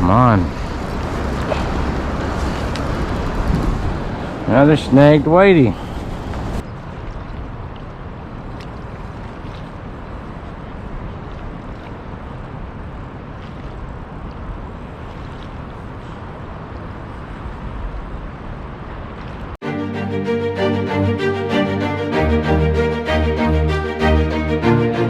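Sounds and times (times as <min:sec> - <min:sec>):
fast river water rushing: 0:19.6 - 0:25.0.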